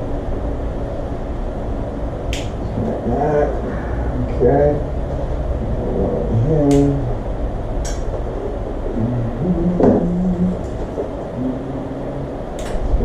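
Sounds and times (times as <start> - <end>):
low background hum: 0.0 - 13.0
wiring connectors clicking: 2.3 - 2.6, 7.8 - 8.3, 12.6 - 12.8
man murmuring: 2.6 - 5.0, 5.6 - 7.2, 8.9 - 12.4.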